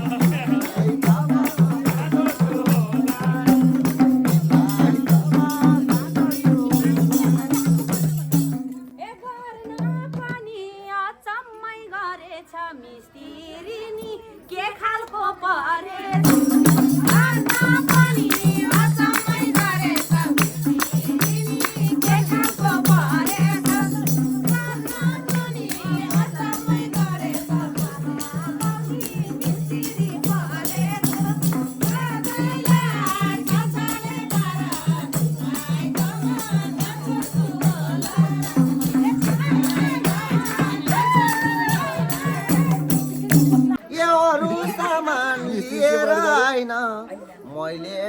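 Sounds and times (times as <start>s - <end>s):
jingling rattling percussion: 0.0s - 8.9s, 16.1s - 43.8s.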